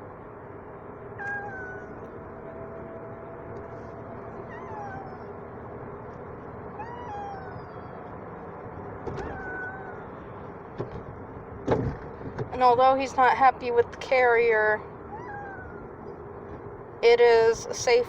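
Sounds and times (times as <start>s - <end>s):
car hum on the road: 0.0s - 18.0s
cat yowling and meowing: 1.2s - 2.0s, 4.3s - 5.4s, 6.7s - 7.9s, 9.1s - 10.2s, 15.0s - 16.0s.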